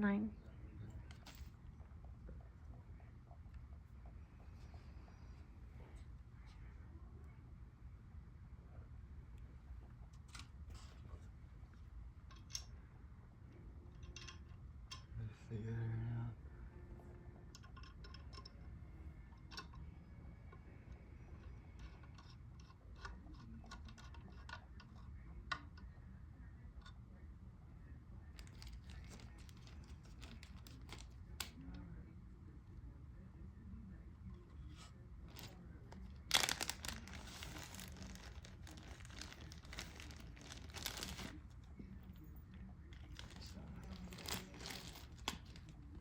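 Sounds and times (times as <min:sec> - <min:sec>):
crinkling and rustling: 0:00.8 - 0:02.4, 0:28.4 - 0:31.6, 0:34.7 - 0:46.0
small parts clicking and tapping: 0:12.2 - 0:12.8, 0:13.9 - 0:15.1, 0:17.5 - 0:18.6.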